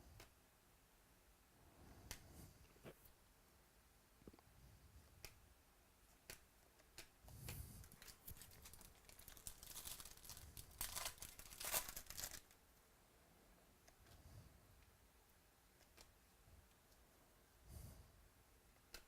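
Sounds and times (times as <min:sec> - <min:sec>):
foil wrapper tearing and crinkling: 0:07.8 - 0:12.6.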